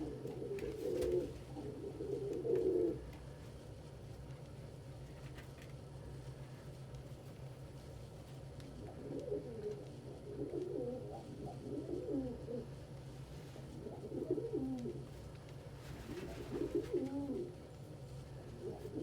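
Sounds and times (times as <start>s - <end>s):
pigeons cooing: 0.0s - 3.1s, 8.8s - 12.8s, 13.6s - 15.1s, 15.9s - 17.6s, 18.5s - 19.0s.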